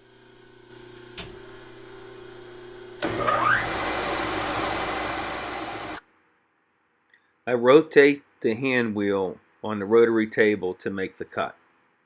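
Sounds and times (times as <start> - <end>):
spindle motor humming: 0.0 - 6.0
end mill grinding metal: 0.1 - 6.0.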